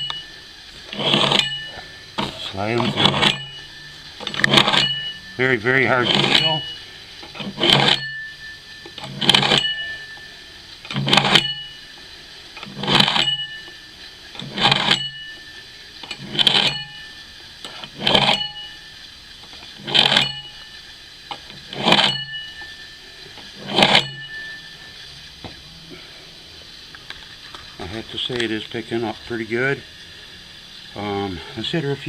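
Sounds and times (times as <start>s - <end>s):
axe blade scraping sharpening rods: 0.8s - 11.7s, 12.6s - 15.4s, 16.0s - 17.0s, 17.6s - 18.7s, 19.5s - 20.7s, 21.3s - 24.7s.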